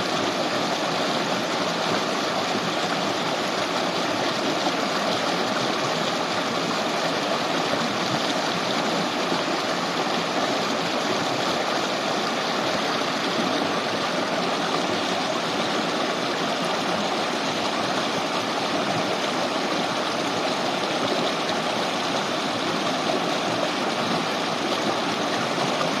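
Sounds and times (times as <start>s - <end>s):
river babbling over stones: 0.0s - 26.0s.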